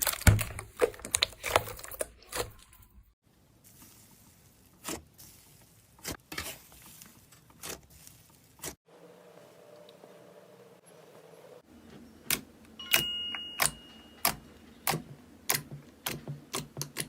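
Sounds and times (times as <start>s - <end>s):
slime squishes: 3.6s - 8.8s.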